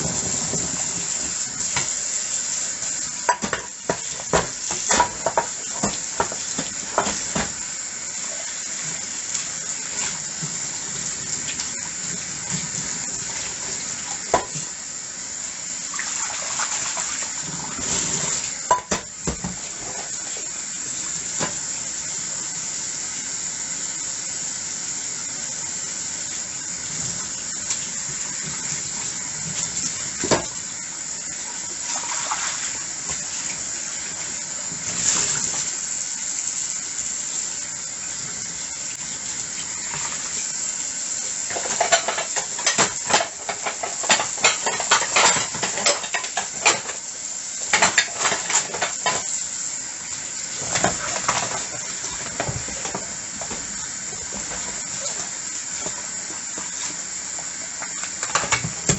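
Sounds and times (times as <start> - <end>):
tap water running into sink: 0.0 - 58.9
dishes clinking: 3.3 - 7.6, 18.7 - 19.6, 41.5 - 47.0.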